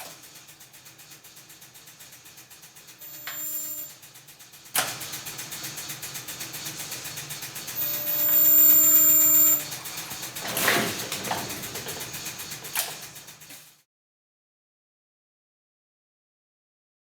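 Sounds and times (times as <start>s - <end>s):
welder humming: 3.0s - 3.9s, 7.7s - 9.8s.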